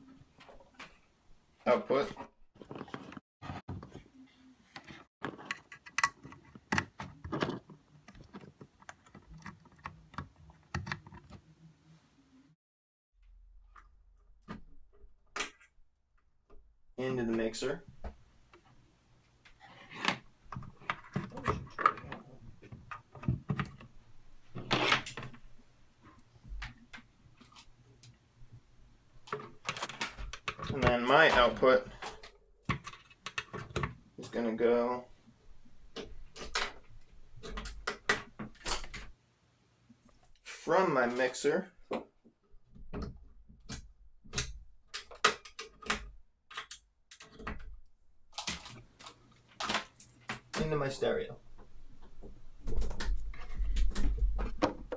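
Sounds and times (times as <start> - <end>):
cable rustling: 1.7 - 11.5, 29.2 - 34.3, 46.6 - 50.8
cables and plugs clicking: 5.2 - 11.5, 29.2 - 34.0, 43.7 - 47.7.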